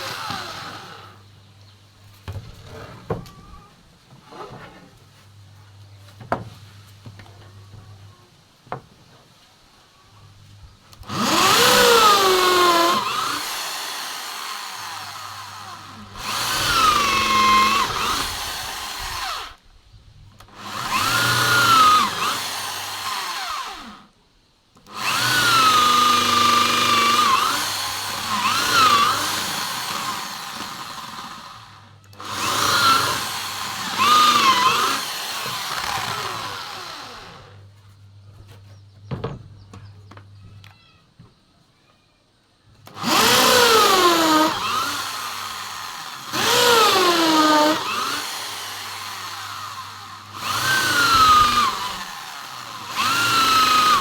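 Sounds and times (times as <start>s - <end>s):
electric drill boring into wood: 0.0s - 1.3s, 11.0s - 19.6s, 20.4s - 24.1s, 24.8s - 37.7s, 42.8s - 54.0s.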